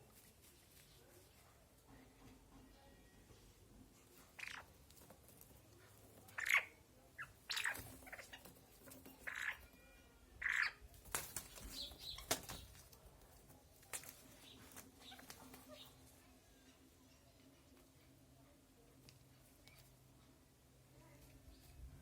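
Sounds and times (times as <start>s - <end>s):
partridge calling: 4.4s - 4.7s, 6.4s - 8.4s, 9.2s - 9.6s, 10.4s - 10.8s.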